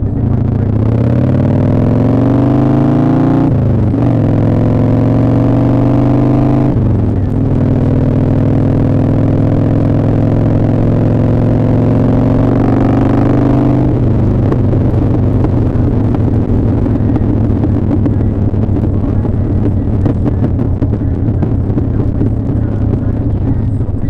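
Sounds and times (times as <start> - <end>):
muffled motorcycle engine: 0.0 - 24.0.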